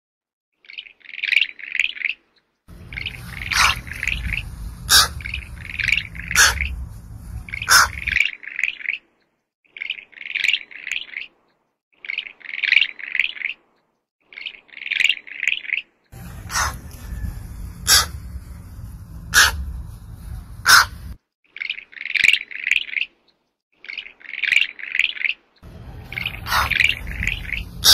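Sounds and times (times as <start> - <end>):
low rumble: 2.7 - 8.2, 16.2 - 21.2, 25.6 - 27.9
high chattering chirp calls: 2.8 - 8.2, 16.2 - 16.8, 26.0 - 27.9.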